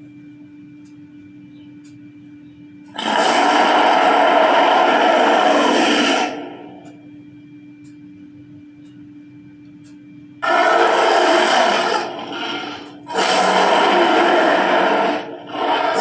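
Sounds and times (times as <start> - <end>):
low steady drone: 0.0 - 16.0.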